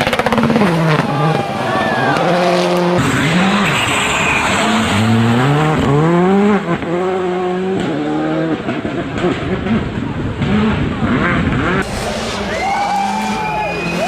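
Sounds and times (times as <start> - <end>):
rally car engine at full throttle: 0.0 - 14.0.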